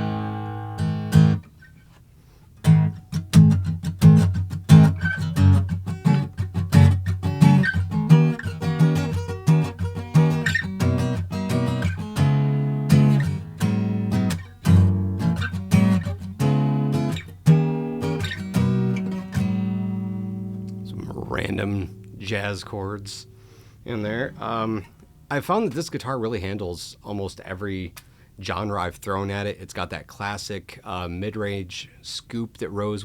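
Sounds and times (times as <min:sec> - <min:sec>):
acoustic guitar jazz chords: 0:00.0 - 0:01.7, 0:02.6 - 0:25.9.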